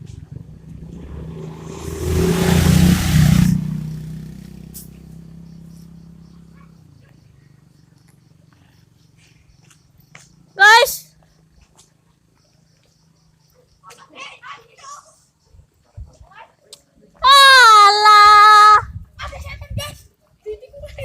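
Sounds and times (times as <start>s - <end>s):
vehicle passing: 0.1s - 9.2s.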